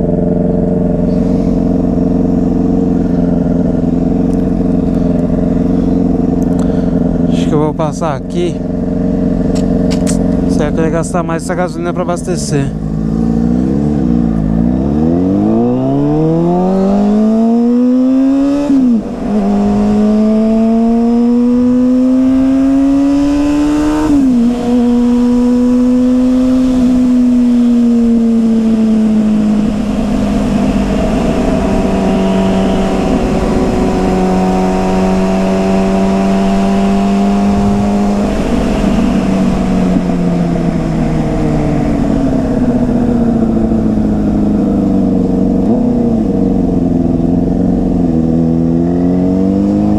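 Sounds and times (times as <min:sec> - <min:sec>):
motorcycle engine revving: 0:00.0 - 0:49.9
wind rush: 0:26.7 - 0:46.6.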